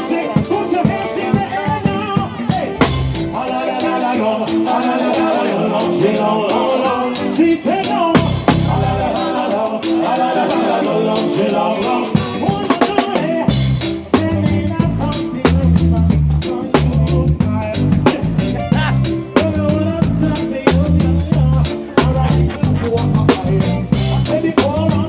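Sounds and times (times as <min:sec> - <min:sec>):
live band playing upbeat music: 0:00.0 - 0:25.0
heavy bass drum hits: 0:08.2 - 0:09.0, 0:13.6 - 0:25.0.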